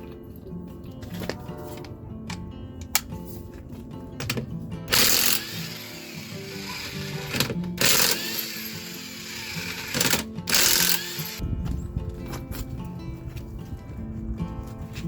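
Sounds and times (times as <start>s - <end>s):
background music: 0.0s - 15.0s
ratchet wrench clicking: 4.9s - 11.4s.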